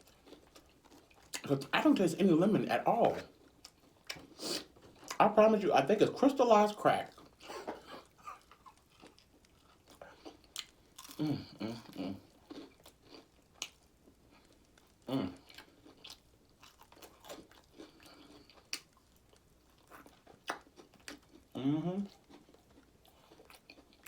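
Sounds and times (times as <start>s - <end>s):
chewing and biting food: 0.0s - 1.7s, 2.8s - 5.4s, 6.0s - 24.0s
person humming mm: 11.2s - 12.2s, 15.1s - 15.4s, 21.6s - 22.1s.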